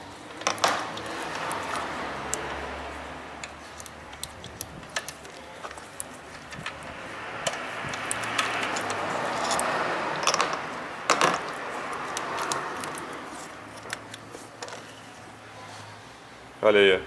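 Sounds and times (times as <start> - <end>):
tools and metal parts clattering: 0.3 - 1.8, 7.4 - 11.6.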